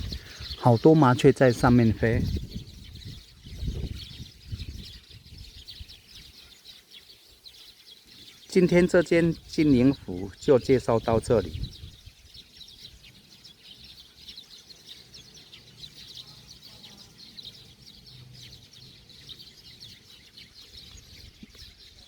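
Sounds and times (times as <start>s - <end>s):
sparrows chirping: 0.0s - 22.0s.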